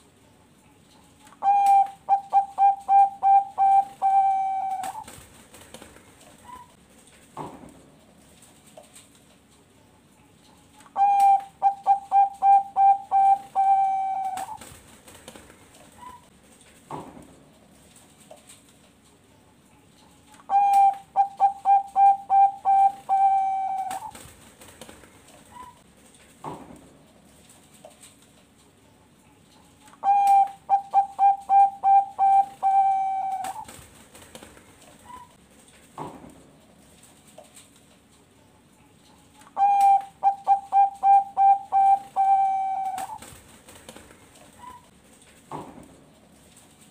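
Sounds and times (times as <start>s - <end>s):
dove cooing: 1.4s - 5.1s, 11.0s - 14.7s, 20.5s - 24.2s, 30.0s - 33.7s, 39.6s - 43.3s.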